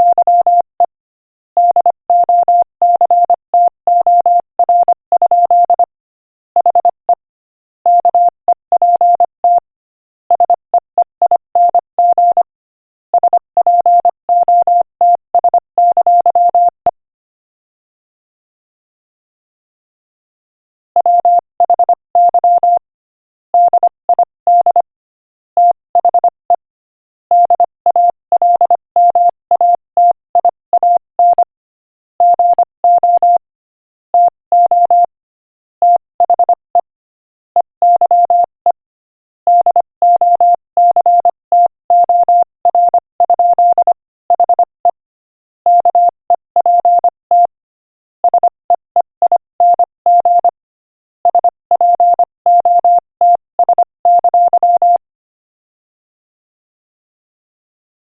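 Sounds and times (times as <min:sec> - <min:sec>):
morse code beeps: 0:00.0 - 0:00.7, 0:01.6 - 0:05.9, 0:06.6 - 0:07.2, 0:07.9 - 0:09.6, 0:10.3 - 0:12.5, 0:13.2 - 0:16.8, 0:21.0 - 0:22.8, 0:23.6 - 0:24.9, 0:25.6 - 0:26.6, 0:27.3 - 0:31.5, 0:32.2 - 0:33.4, 0:34.2 - 0:35.1, 0:35.8 - 0:36.9, 0:37.6 - 0:38.8, 0:39.5 - 0:45.0, 0:45.7 - 0:47.6, 0:48.2 - 0:50.6, 0:51.2 - 0:55.0.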